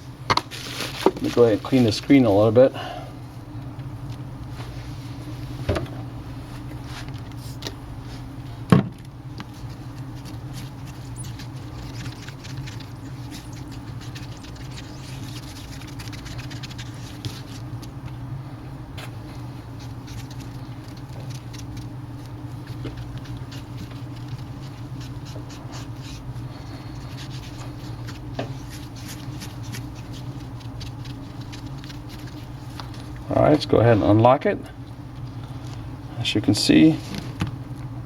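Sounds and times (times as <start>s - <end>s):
low hum: 7.2s - 33.8s
rubbing on glass touchscreen: 9.5s - 17.7s.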